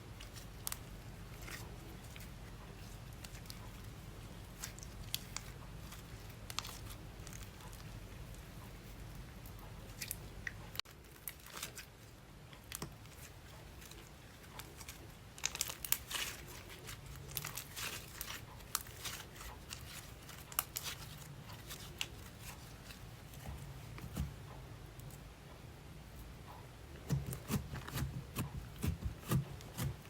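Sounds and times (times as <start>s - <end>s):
slime crackling and popping: 14.7s - 22.6s.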